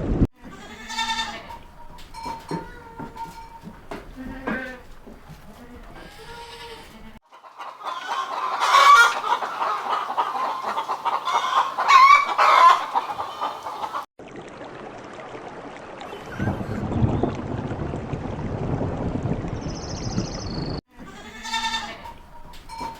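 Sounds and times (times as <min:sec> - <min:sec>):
chickens clucking: 0:00.4 - 0:14.1, 0:21.2 - 0:22.9.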